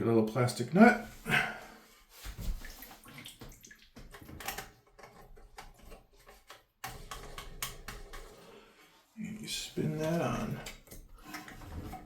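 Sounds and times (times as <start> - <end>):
plastic parts clicking and scraping: 4.1 - 8.4, 9.9 - 12.0.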